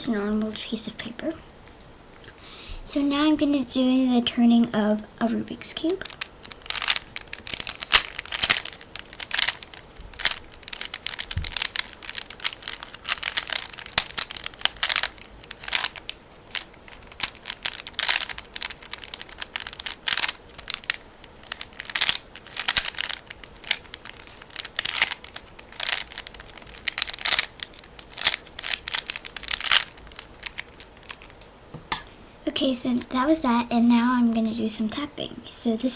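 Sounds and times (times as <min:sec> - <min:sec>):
puzzle cube clicking: 0:06.0 - 0:31.5.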